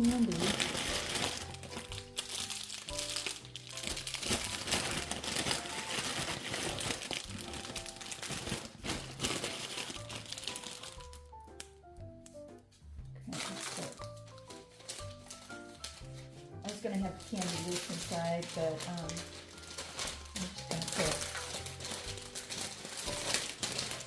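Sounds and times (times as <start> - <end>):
plastic candy wrappers crinkling: 0.0 - 12.6, 13.3 - 24.0
background music: 0.0 - 24.0.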